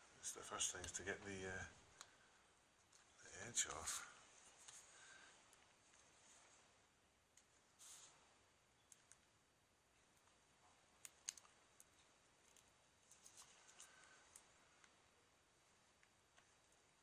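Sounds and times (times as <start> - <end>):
faint clicks: 11.0 - 15.0.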